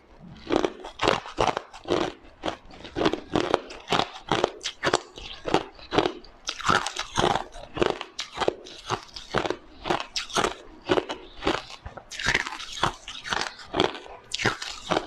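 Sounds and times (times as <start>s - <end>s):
ice crunching between teeth: 0.2s - 15.0s.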